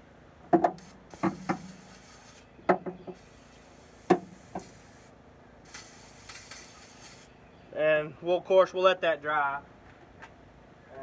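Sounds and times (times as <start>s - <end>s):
spray cleaner hissing: 0.8s - 2.4s, 3.1s - 5.1s, 5.7s - 7.3s.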